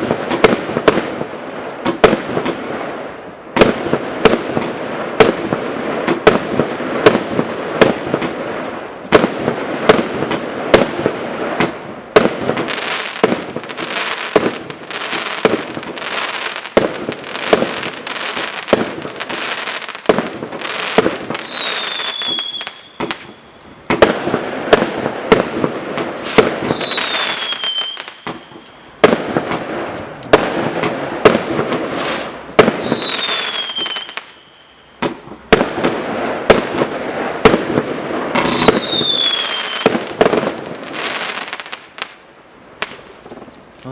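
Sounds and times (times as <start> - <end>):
fireworks shots and bursts: 0.0 - 42.2
fireworks crackling: 0.0 - 43.9
falling firework whistle: 21.3 - 23.5, 26.1 - 29.0, 31.9 - 35.0, 38.3 - 39.9.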